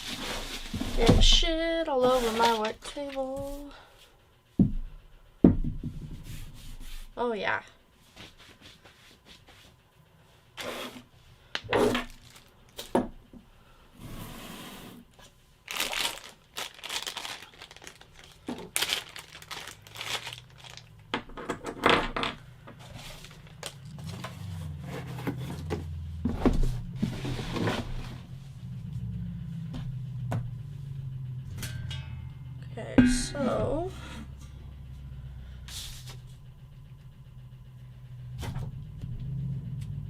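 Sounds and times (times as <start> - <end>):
low steady hum: 0.0 - 40.0
plastic packaging crinkling and tearing: 12.0 - 12.9, 15.6 - 21.1, 22.8 - 24.1.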